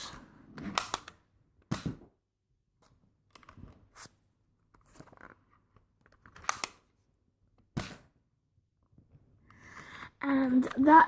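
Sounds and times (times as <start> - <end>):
toy blaster clicks and pops: 0.7 - 2.0.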